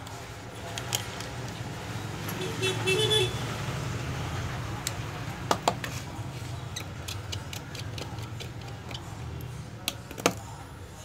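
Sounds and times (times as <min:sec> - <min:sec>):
plastic phone parts clicking: 0:09.8 - 0:10.4.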